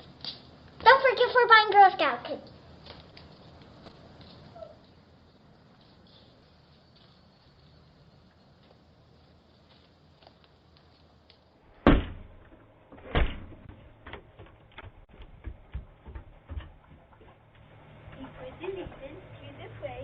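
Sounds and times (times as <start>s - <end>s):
loud thumps: 11.8s - 17.0s.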